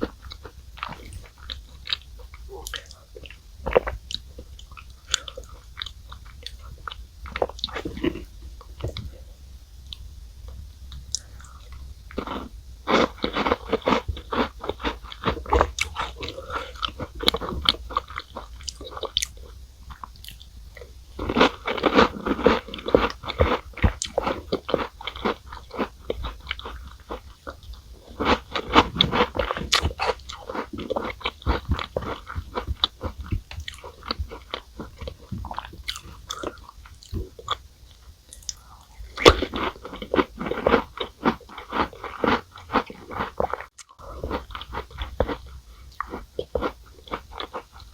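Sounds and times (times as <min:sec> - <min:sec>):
person crunching cookies: 0:10.9 - 0:47.9.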